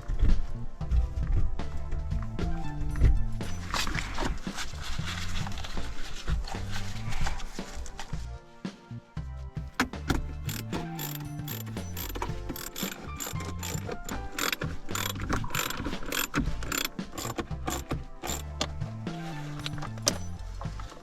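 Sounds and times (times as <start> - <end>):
background music with bassline: 0.0 - 21.0
mechanical ratcheting clicks: 9.8 - 18.6.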